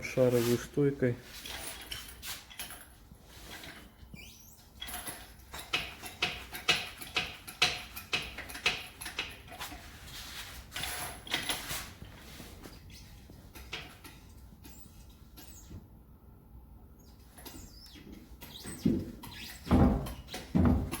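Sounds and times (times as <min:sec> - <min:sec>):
creaking hydraulic pump strokes: 0:17.0 - 0:21.0.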